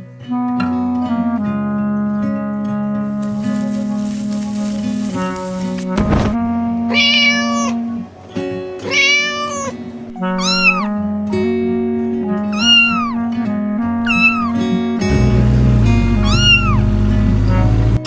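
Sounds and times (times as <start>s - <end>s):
background music: 0.0s - 18.0s
cat meowing: 6.9s - 8.0s, 8.8s - 11.0s, 12.5s - 13.2s, 14.0s - 14.6s, 16.2s - 16.8s.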